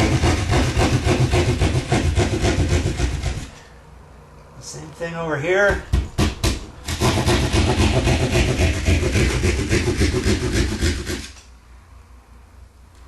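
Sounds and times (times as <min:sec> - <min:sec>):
hand saw cutting drywall: 0:00.0 - 0:03.7, 0:05.9 - 0:11.5
saw blade tapping into drywall: 0:00.0 - 0:03.7, 0:05.7 - 0:11.5.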